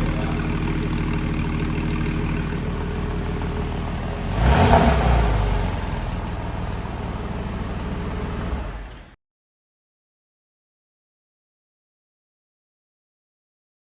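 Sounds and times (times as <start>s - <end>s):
car engine idling: 0.0s - 9.2s
engine rev: 0.0s - 9.2s.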